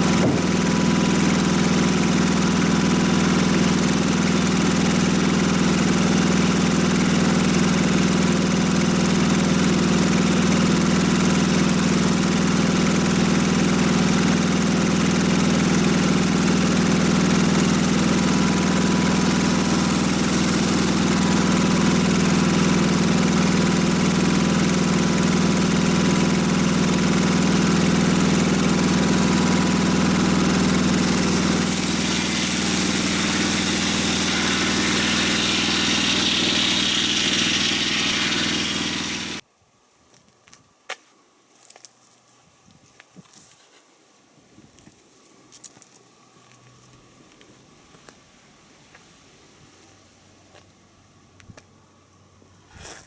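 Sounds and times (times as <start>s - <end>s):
sawmill gasoline engine running: 0.0s - 39.4s.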